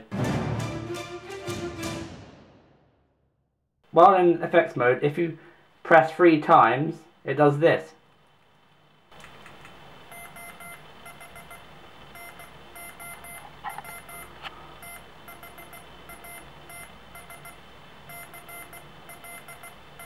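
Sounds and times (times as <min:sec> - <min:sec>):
toy electronic rapid beeps: 0:10.1 - 0:11.6, 0:12.2 - 0:20.0.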